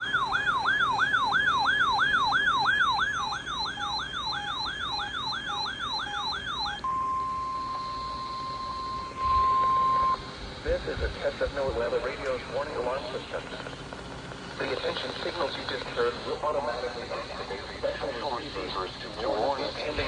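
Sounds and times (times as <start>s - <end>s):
warbling electronic siren: 0.0s - 10.8s
steady warning alarm tone: 0.0s - 20.0s.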